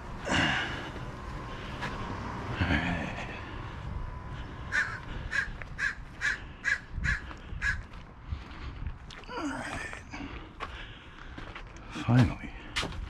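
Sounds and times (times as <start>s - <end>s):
bird calling: 4.5s - 7.9s.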